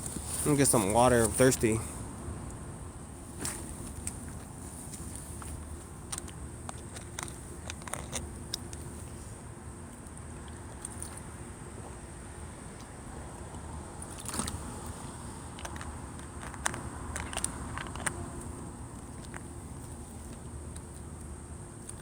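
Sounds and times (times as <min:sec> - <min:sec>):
rustle: 0:00.0 - 0:02.0, 0:03.2 - 0:09.4
street traffic rumble: 0:00.0 - 0:22.0
handling clicks and scrapes: 0:03.4 - 0:09.2.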